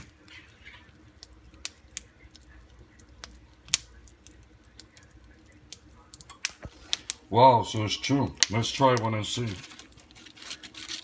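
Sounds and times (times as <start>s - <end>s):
pork rinds crackling in bag: 0.0s - 7.6s, 8.2s - 11.0s.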